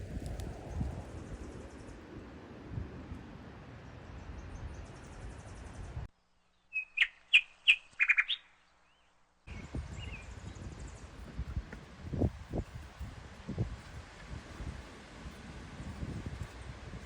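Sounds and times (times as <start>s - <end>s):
outdoor background noise: 0.0s - 17.0s
songbird chirping: 3.7s - 12.9s.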